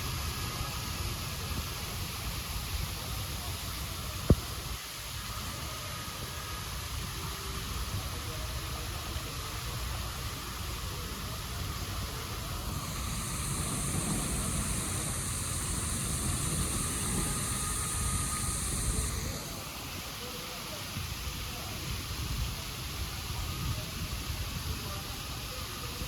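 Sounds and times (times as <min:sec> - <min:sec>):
heavy rain hissing: 0:00.0 - 0:24.4
low rumble: 0:11.6 - 0:19.8.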